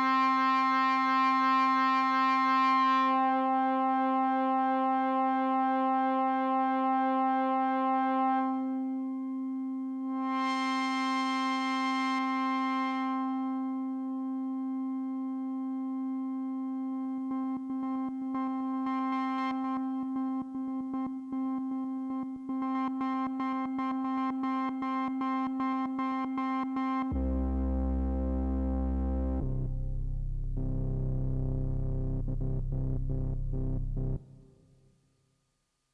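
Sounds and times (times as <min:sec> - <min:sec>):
synthesizer sustained note: 0:27.1 - 0:34.5
stuttering synth pulse pattern: 0:27.2 - 0:34.4.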